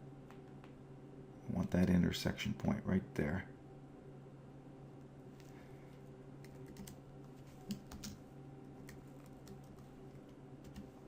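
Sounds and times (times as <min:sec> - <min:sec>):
faint low hum: 0:00.0 - 0:11.0
keyboard and mouse clicks: 0:06.4 - 0:08.2.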